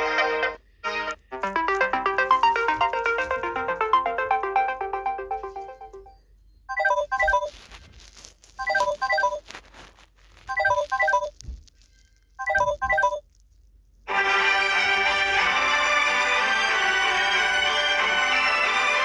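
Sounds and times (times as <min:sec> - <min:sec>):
phone ringtone of falling notes: 0:01.4 - 0:07.5, 0:08.6 - 0:09.4, 0:12.4 - 0:13.2.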